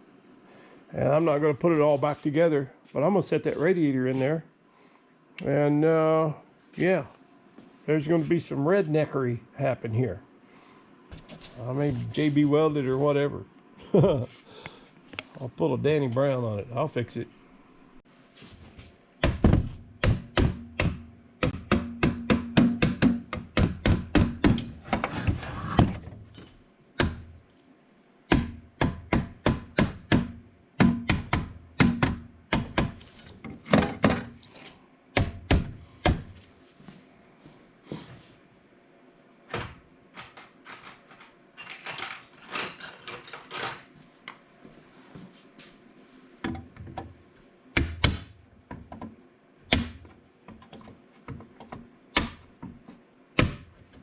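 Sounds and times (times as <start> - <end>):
tools knocking and clattering: 28.4 - 35.7, 39.5 - 44.0.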